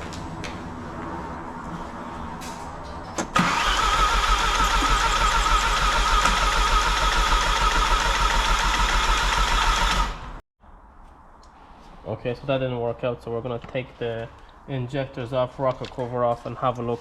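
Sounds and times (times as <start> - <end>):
starter motor cranking engine: 3.2 - 10.3.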